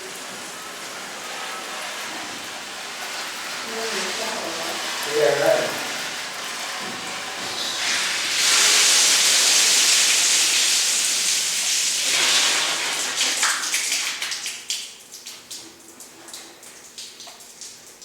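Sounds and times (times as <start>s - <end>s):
hot pipe joint hissing with steam: 7.1s - 11.0s.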